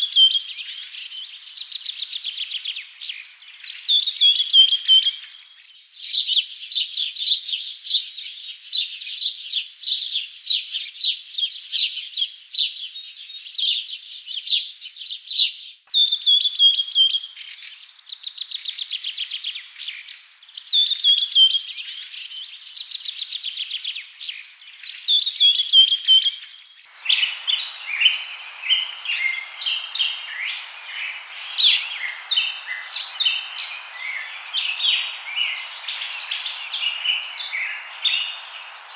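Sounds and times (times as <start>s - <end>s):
songbird trilling and whistling: 15.9s - 19.9s, 25.1s - 38.9s
steady hiss: 15.9s - 26.1s, 26.8s - 38.9s
bird chirping: 15.9s - 38.9s.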